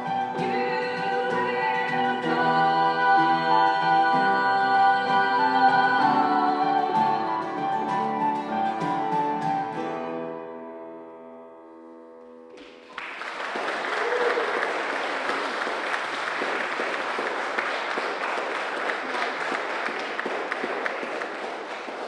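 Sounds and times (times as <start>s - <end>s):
keyboard chord ringing: 0.0s - 12.5s
audience applauding: 12.5s - 22.0s.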